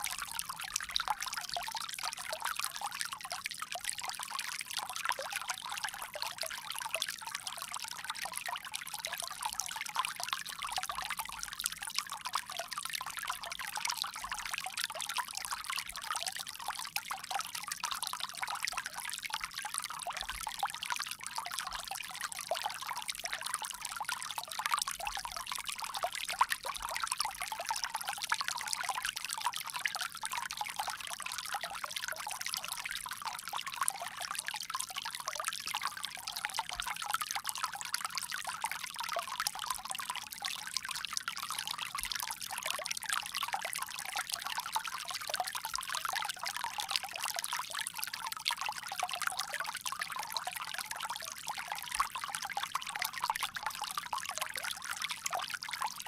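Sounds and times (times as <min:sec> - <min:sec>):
water trickling from a spout: 0:00.0 - 0:56.0.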